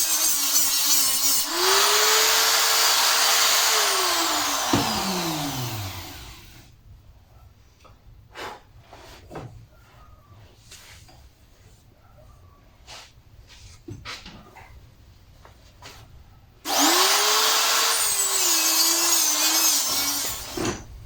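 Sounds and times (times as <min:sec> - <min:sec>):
electric grinder grinding metal: 0:00.0 - 0:06.5, 0:16.7 - 0:20.6.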